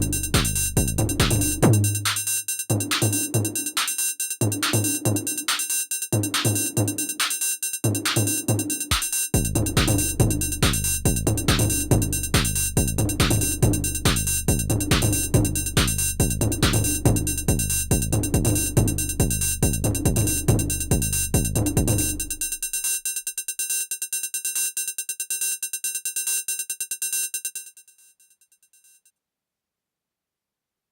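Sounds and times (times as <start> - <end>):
low kick drums: 0.0 - 2.0, 9.4 - 22.3
fast ticking hi-hats: 0.0 - 23.3.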